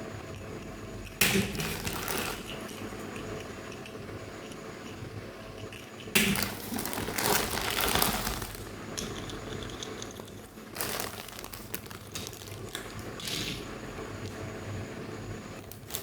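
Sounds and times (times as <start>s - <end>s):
plastic packaging crinkling: 1.4s - 2.9s, 6.2s - 9.3s, 10.0s - 13.7s, 15.6s - 16.0s.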